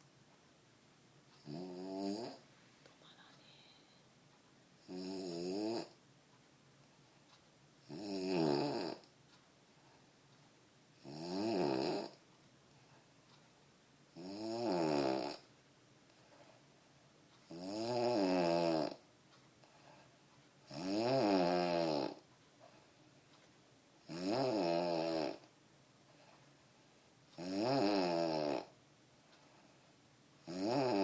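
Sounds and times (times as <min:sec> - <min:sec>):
man snoring: 0:01.4 - 0:02.4, 0:04.8 - 0:06.0, 0:07.8 - 0:09.1, 0:11.0 - 0:12.2, 0:14.2 - 0:15.4, 0:17.5 - 0:19.0, 0:20.7 - 0:22.2, 0:24.1 - 0:25.5, 0:27.4 - 0:28.7, 0:30.4 - 0:31.0.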